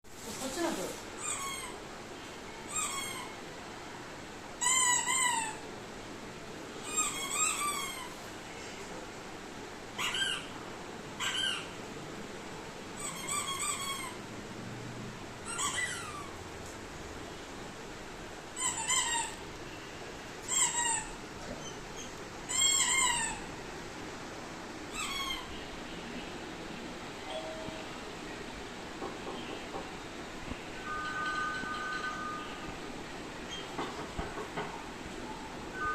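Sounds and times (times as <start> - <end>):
high-pitched mewing cries: 2.7 - 3.5, 15.4 - 16.4, 20.4 - 21.2, 22.5 - 23.6, 24.9 - 25.6.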